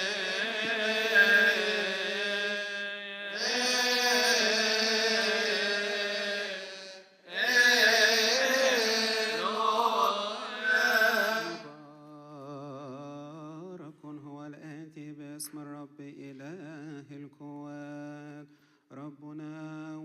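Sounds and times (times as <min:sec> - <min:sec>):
voices chanting a hymn: 0:00.0 - 0:13.2.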